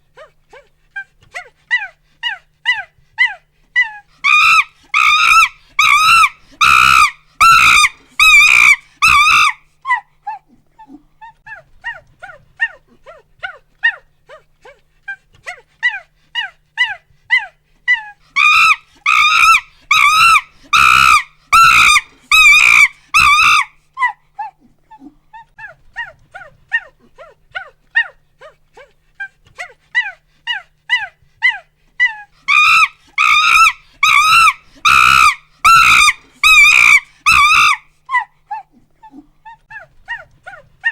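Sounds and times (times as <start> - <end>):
monkey hooting: 1.7 - 10.0, 15.8 - 24.6, 29.6 - 40.9
monkey screaming: 1.7 - 10.0, 15.9 - 24.2, 29.6 - 38.7.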